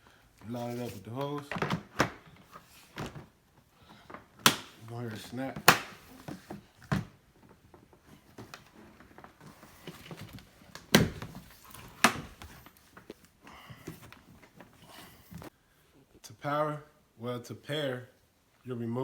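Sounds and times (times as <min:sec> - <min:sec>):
plastic snapping into place: 0:04.4 - 0:04.8, 0:05.6 - 0:06.0.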